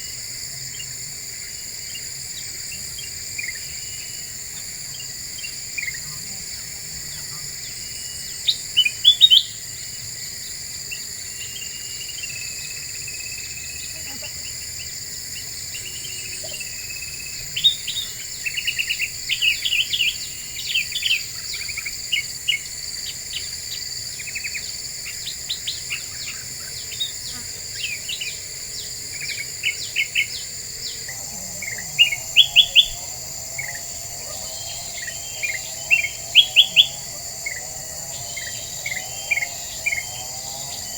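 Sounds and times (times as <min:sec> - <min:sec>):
high-pitched insect drone: 0:00.0 - 0:40.9.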